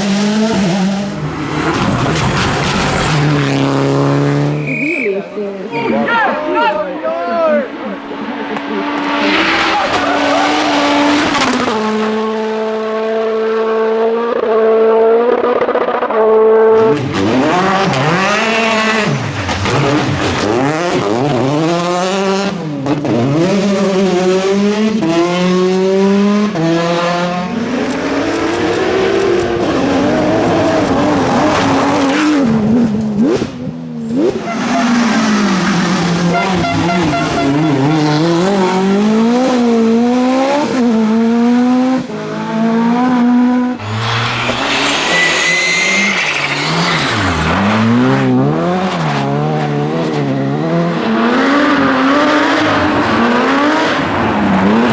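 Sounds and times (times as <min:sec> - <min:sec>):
rally car engines revving: 0:00.0 - 0:54.9
tyre squeal: 0:43.8 - 0:47.9.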